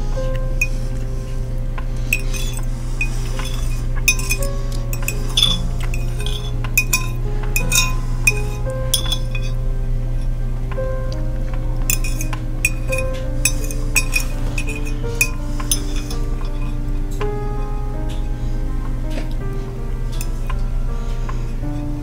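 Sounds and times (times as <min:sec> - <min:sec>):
background music: 0:00.0 - 0:22.0
utensil clinking and scraping on plate: 0:02.1 - 0:09.6, 0:11.9 - 0:16.7.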